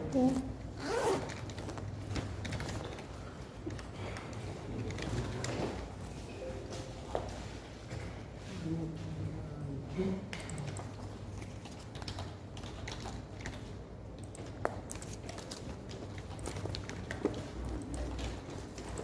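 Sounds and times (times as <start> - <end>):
low room hum: 0.0 - 19.0
typing on a keyboard: 1.3 - 5.6, 10.3 - 19.0.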